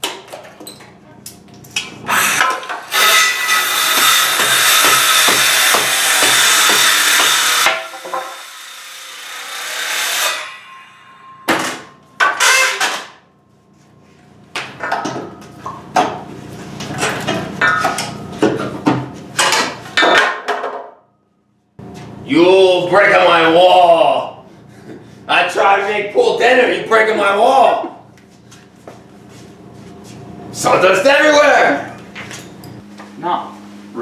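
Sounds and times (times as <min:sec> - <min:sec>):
power saw cutting wood: 0:02.1 - 0:11.3, 0:12.4 - 0:13.1.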